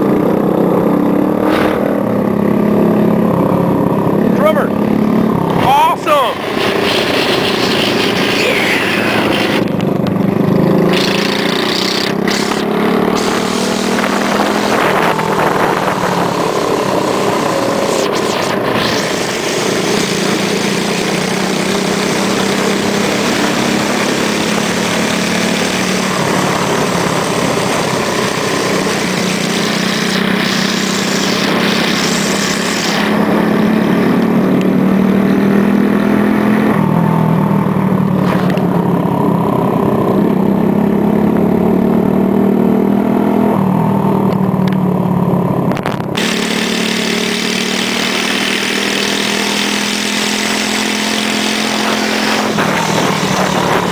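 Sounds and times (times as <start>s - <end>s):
motorcycle engine running: 0.0s - 53.9s
wind rushing past microphone: 13.2s - 18.7s, 51.8s - 53.9s.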